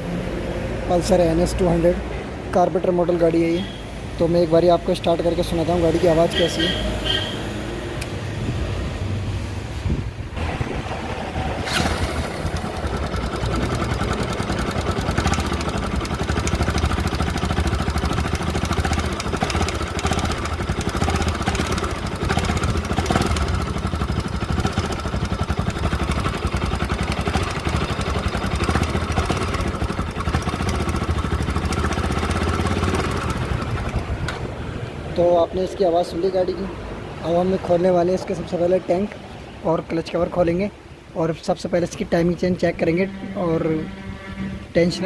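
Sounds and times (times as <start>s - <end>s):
fast ticking engine clatter: 10.4s - 34.4s
motorcycle engine idling: 10.4s - 34.5s.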